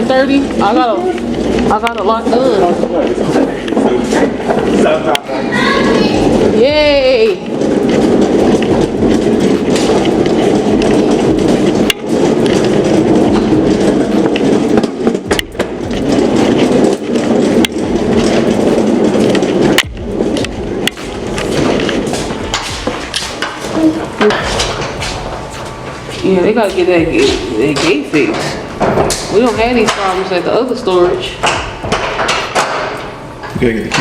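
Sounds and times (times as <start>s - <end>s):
cart wheels rolling on hard floor: 0.0s - 34.0s
sharp knocks: 7.6s - 25.8s, 27.0s - 34.0s.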